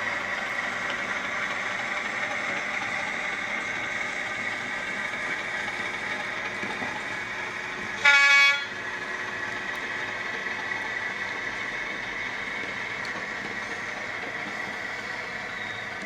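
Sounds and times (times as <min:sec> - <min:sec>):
steady mechanical hum: 0:00.0 - 0:16.0
train horn toot: 0:08.0 - 0:08.8.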